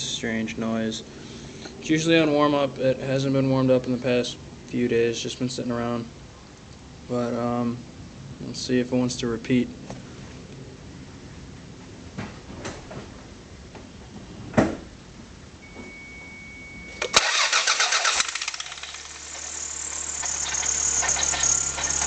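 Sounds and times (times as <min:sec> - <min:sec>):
engine cranking and idling: 0:17.0 - 0:22.0
high metallic grinding: 0:17.1 - 0:22.0.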